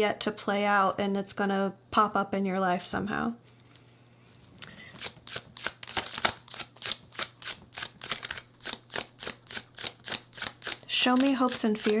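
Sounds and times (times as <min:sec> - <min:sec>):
cards being shuffled: 0:04.4 - 0:12.0.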